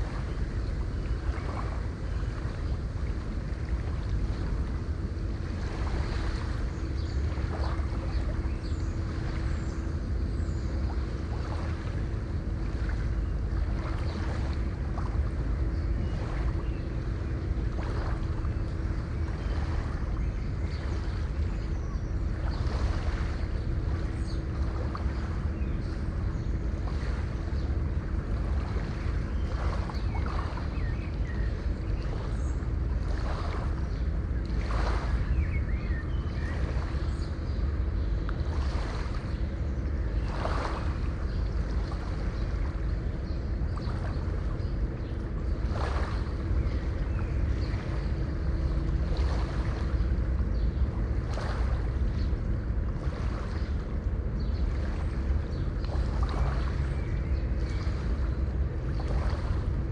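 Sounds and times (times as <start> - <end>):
faint steady hum: 0.0 - 59.9.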